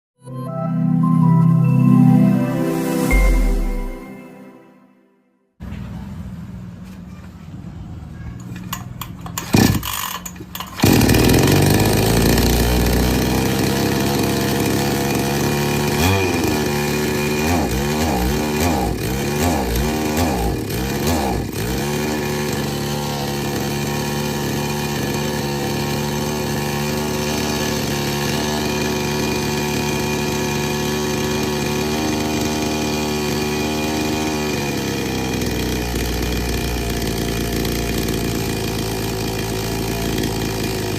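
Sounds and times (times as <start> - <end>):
chainsaw engine running: 8.4 - 40.9.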